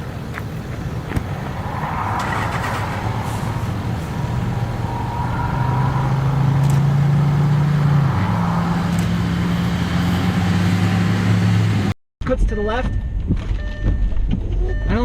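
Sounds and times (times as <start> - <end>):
car engine and road noise: 0.0 - 12.0.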